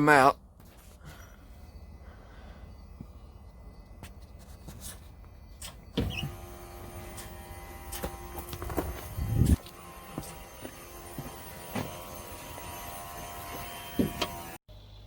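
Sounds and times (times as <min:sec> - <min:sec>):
hydraulic pump motor whining: 0:05.8 - 0:14.6.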